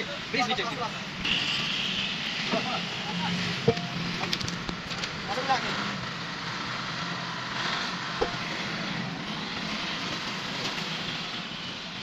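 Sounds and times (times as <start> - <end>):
workshop noise: 2.2 - 6.0, 7.9 - 10.1.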